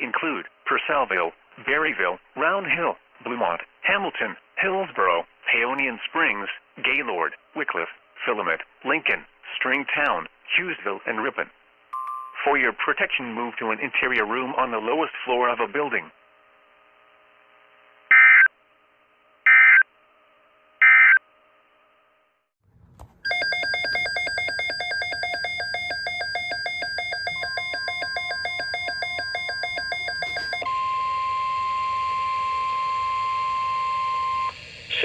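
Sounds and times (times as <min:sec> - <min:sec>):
alert data tone bursts: 0:23.3 - 0:30.7
pulsing electronic alert tones: 0:23.3 - 0:30.7
steady single-pitch alert tone: 0:23.3 - 0:34.5.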